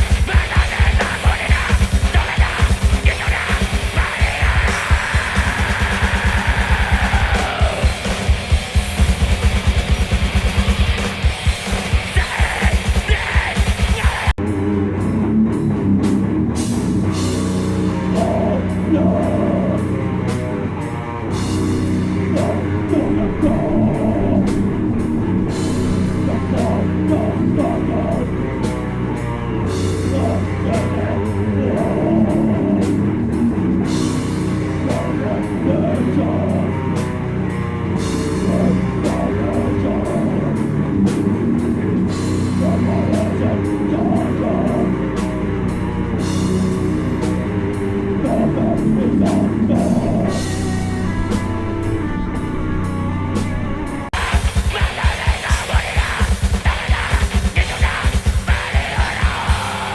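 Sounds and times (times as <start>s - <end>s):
death metal band playing: 0.0s - 59.9s
snare and cymbal hits: 54.2s - 59.9s.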